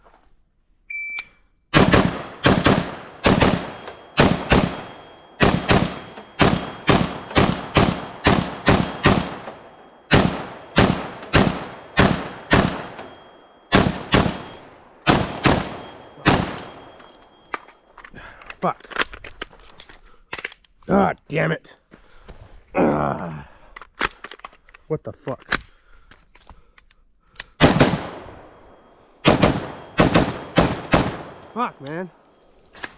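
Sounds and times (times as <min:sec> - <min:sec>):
short electronic beep: 0:00.9 - 0:01.4
gunshots: 0:01.7 - 0:17.1, 0:27.6 - 0:28.6, 0:29.2 - 0:31.8.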